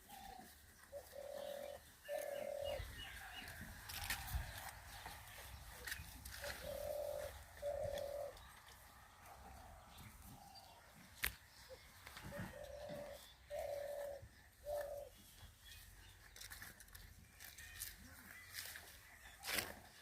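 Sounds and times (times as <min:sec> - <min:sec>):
dove cooing: 0:00.0 - 0:08.5, 0:11.7 - 0:15.3.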